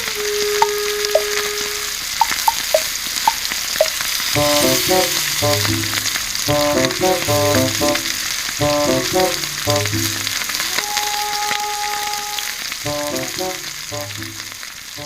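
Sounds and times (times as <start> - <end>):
campfire sizzling and crackling: 0.0 - 15.0
melodic background music: 4.4 - 10.6, 12.9 - 14.5.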